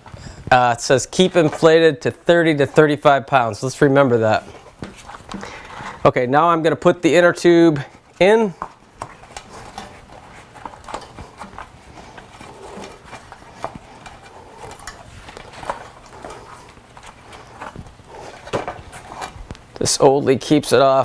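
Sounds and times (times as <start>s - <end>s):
rubber inner tube tapping and rubbing: 8.6s - 19.7s.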